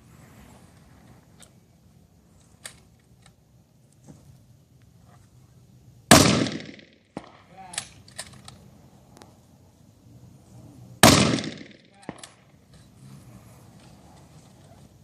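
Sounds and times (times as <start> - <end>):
rifle shot crack: 6.1 - 7.9, 11.0 - 12.4.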